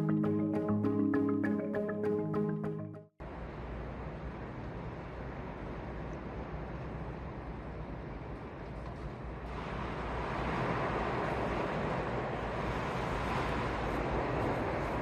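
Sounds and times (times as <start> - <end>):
hurricane wind and rain: 8.8 - 15.0.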